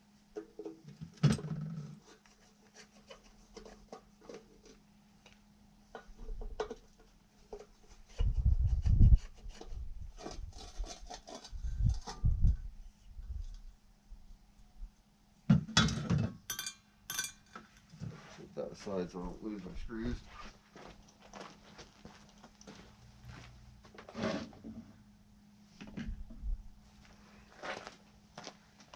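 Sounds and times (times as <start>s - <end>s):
faint steady hum: 0.0s - 28.9s
hand tools and metal parts handled: 9.5s - 12.6s, 15.7s - 18.2s.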